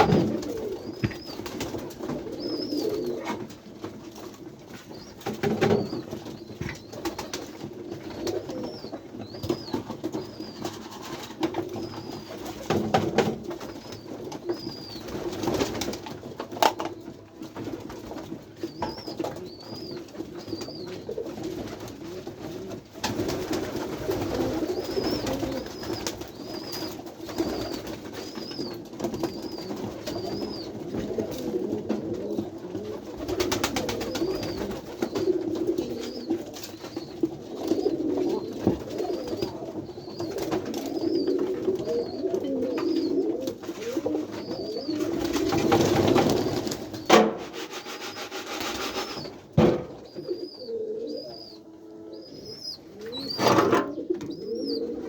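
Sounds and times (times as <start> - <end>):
pigeons cooing: 0.0 - 55.0
sharp knocks: 47.1 - 47.7, 49.6 - 50.0.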